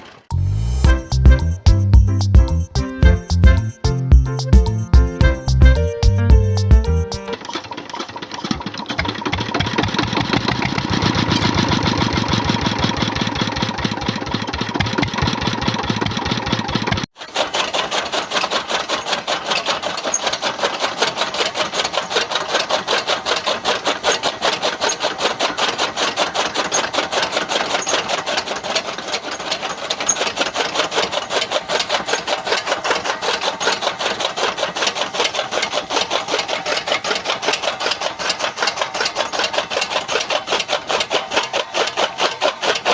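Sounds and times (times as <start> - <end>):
small motor rattling: 7.3 - 42.9.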